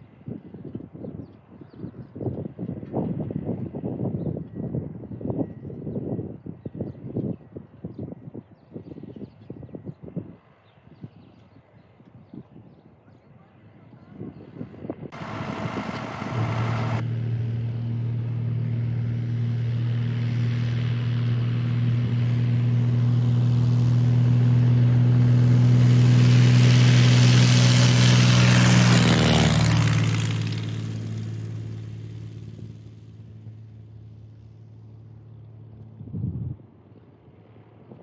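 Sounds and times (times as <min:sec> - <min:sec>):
small airplane engine at full power: 0:15.0 - 0:38.0.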